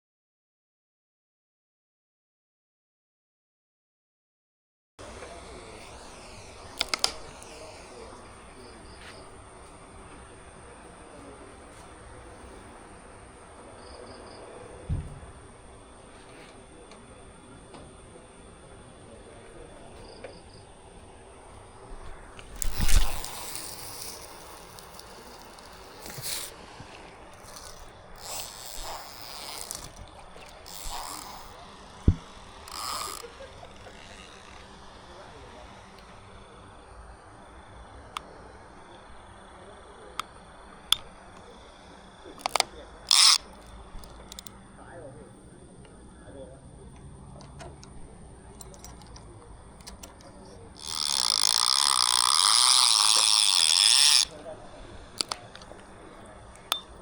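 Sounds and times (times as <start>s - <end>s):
light reel clicks: 5.0s - 14.8s, 15.4s - 44.9s, 46.9s - 57.0s
fishing reel drag buzzing: 5.0s - 45.0s, 48.5s - 57.0s
sharp thump: 14.9s - 15.3s.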